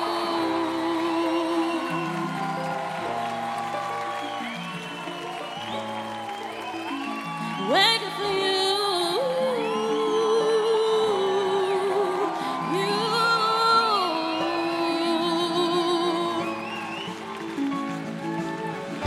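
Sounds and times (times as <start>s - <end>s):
woman singing with vibrato: 0.0s - 2.4s, 7.6s - 16.5s
musical accompaniment: 0.0s - 19.0s.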